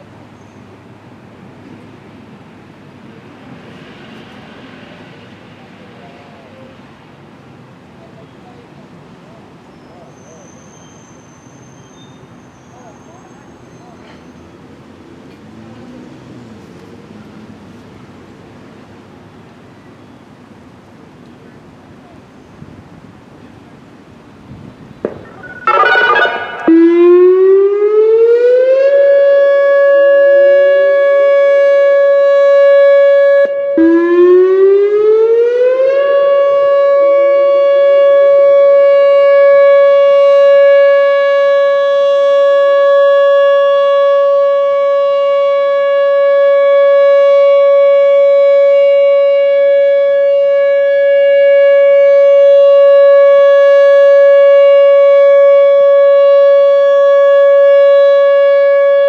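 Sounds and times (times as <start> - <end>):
electronic siren tone: 25.1 - 28.5.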